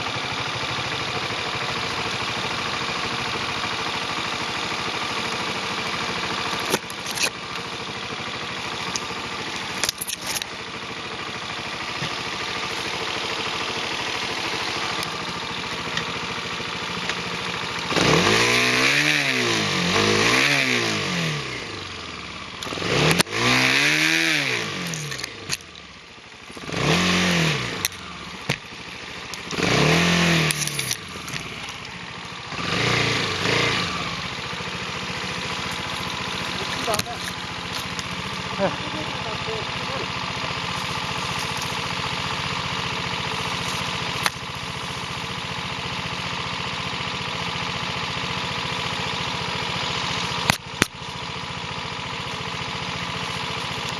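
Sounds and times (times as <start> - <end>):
vehicle engine revving: 4.6 - 25.8, 26.4 - 53.9.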